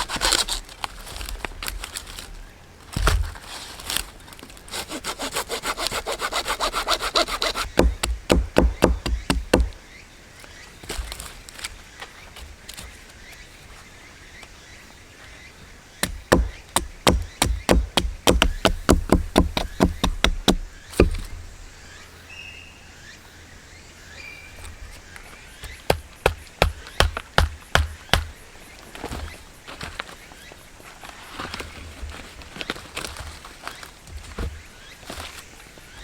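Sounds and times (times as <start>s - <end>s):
hand tool knocking rapidly: 7.7s - 9.8s, 16.0s - 21.3s, 25.9s - 28.3s.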